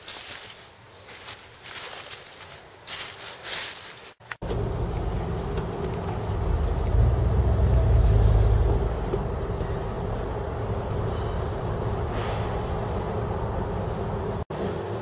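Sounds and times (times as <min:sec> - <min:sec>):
rustling: 0:00.0 - 0:04.4
truck engine and road rumble: 0:00.0 - 0:15.0.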